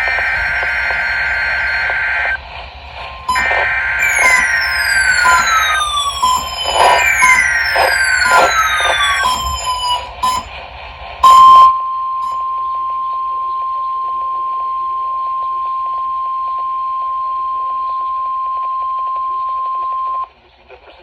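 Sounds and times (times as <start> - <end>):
falling electronic sweeps: 0.0 - 10.5
loud burst: 0.0 - 10.5
clicks: 0.0 - 10.6
steady warning alarm tone: 0.0 - 20.3.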